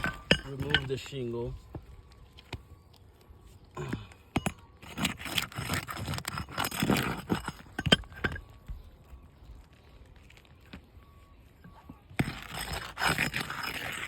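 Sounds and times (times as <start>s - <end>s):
shingle scraping and crinkling: 0.0s - 14.0s.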